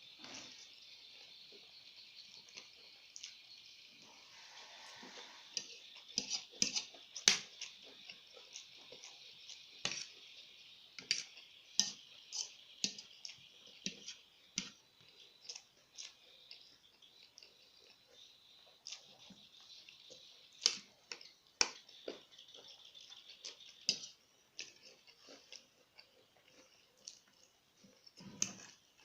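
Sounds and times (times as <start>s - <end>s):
steady high hiss: 0.0s - 29.0s
chewing clicks and smacks: 20.6s - 28.8s.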